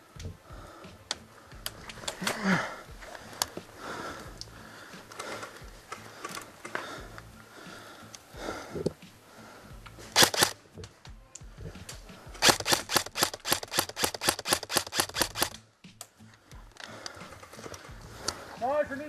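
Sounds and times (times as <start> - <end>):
airsoft rifle shots: 10.1 - 10.6, 12.4 - 15.6.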